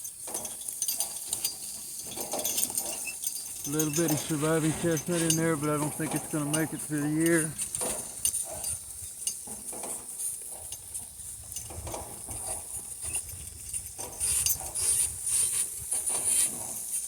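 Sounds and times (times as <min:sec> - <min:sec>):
donkey hoofsteps: 0:00.0 - 0:17.0
harness clinking: 0:00.0 - 0:17.0
rustling: 0:00.2 - 0:13.3.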